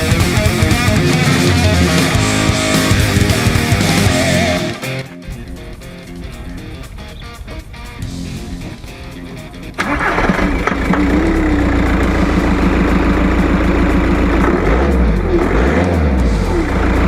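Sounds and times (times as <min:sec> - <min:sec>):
diesel engine running: 0:00.0 - 0:05.0, 0:09.7 - 0:17.0.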